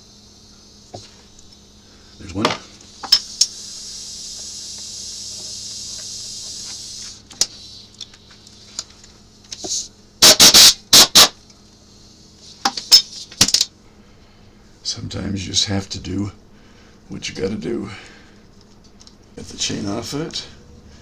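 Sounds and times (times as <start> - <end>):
steady high hiss: 0.0 - 21.0.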